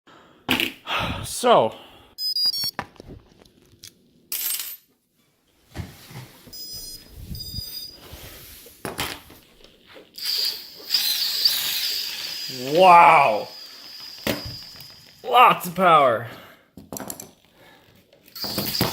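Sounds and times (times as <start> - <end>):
high-pitched electronic tones: 6.6 - 8.1, 10.2 - 15.3.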